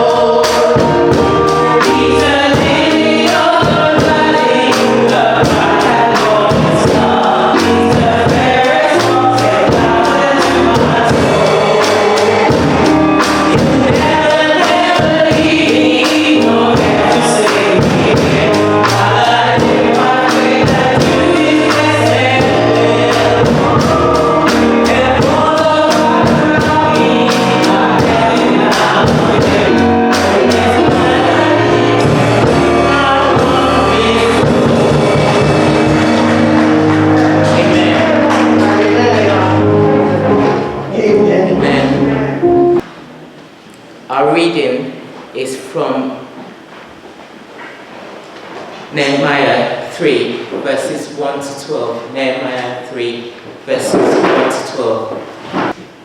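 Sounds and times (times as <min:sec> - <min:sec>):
band with steady drum beat: 0:00.0 - 0:40.6
group singing gospel song: 0:00.0 - 0:43.3.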